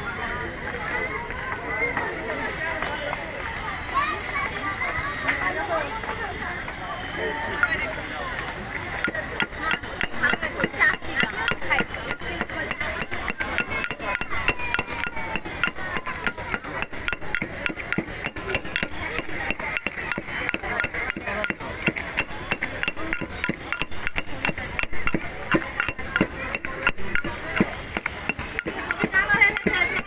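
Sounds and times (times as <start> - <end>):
rapid uneven knocking: 8.9 - 30.0.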